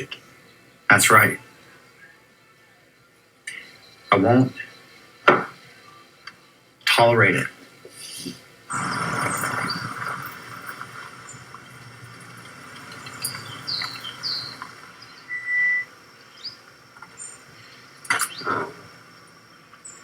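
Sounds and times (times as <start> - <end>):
burst of noise: 7.9 - 19.5
high bird chirps: 8.0 - 20.0.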